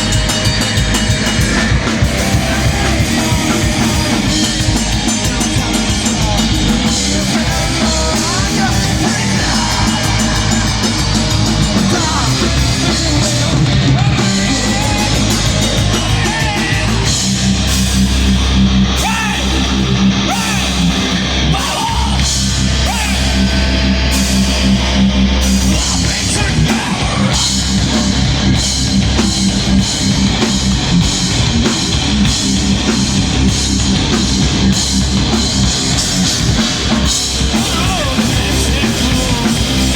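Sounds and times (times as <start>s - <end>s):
heavy metal band playing live: 0.0s - 39.9s.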